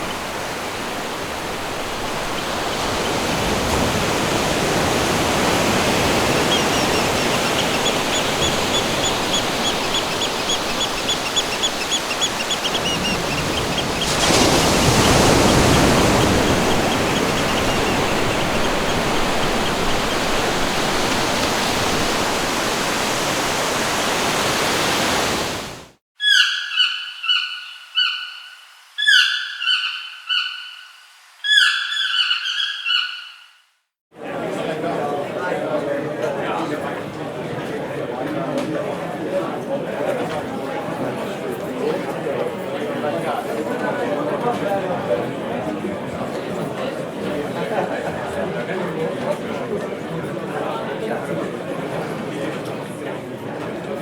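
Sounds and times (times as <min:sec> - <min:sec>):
bird calling: 0:00.0 - 0:25.6, 0:26.2 - 0:33.7
rushing water: 0:00.0 - 0:26.0
faint bird trill: 0:06.4 - 0:14.2, 0:26.2 - 0:33.7.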